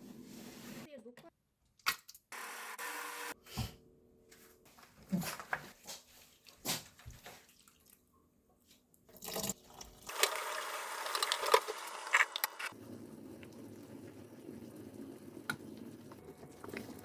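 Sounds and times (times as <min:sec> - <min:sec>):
liquid splashing and dripping: 0:06.3 - 0:08.1.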